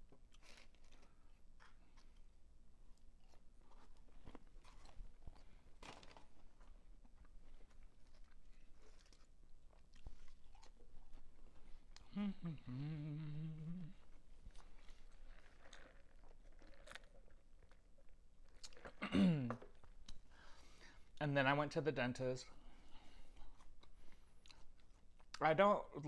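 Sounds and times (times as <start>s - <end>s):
chewing and biting food: 0.0s - 12.1s, 14.1s - 19.0s
person humming: 12.0s - 14.0s
short vocal sound: 12.0s - 14.1s.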